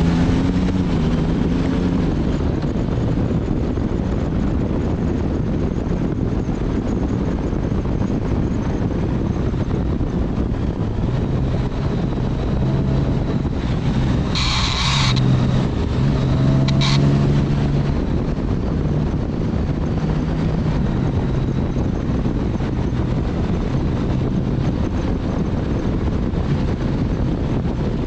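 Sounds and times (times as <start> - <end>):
motorcycle engine running: 0.0 - 28.0
wind rush: 0.0 - 28.0
metal parts scraping on asphalt: 14.2 - 15.4.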